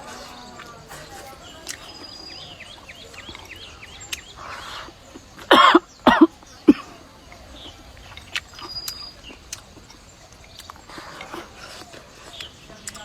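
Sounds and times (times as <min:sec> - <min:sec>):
small bird chirping: 0:00.0 - 0:13.0
person coughing: 0:05.5 - 0:07.0.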